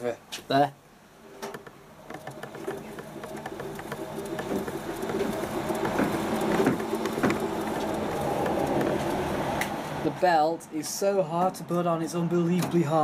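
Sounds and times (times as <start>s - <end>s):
washing machine motor hum: 1.2s - 10.1s.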